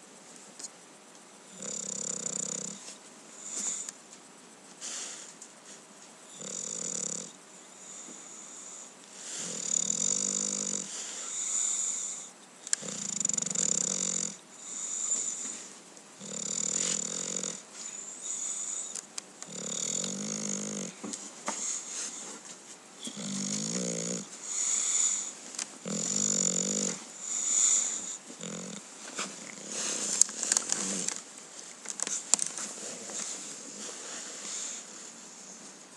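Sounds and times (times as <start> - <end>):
dog snoring: 1.5 - 3.9, 6.3 - 31.2
breathy hissing breath: 1.6 - 4.0, 4.8 - 35.9
rustling: 27.8 - 35.9.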